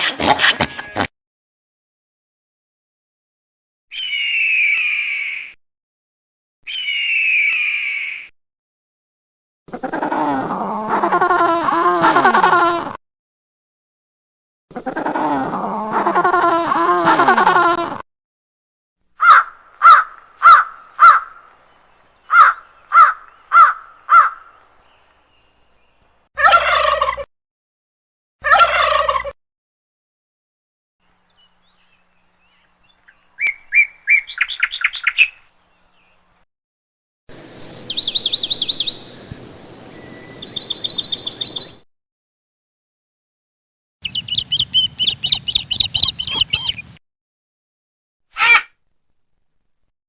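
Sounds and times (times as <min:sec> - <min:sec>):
high bird chirping: 0:03.9 - 0:05.6, 0:06.7 - 0:08.3, 0:31.4 - 0:36.1, 0:37.3 - 0:41.8, 0:44.0 - 0:47.0
fowl calls: 0:19.2 - 0:21.3, 0:44.0 - 0:47.0
harsh animal calls: 0:44.0 - 0:47.0.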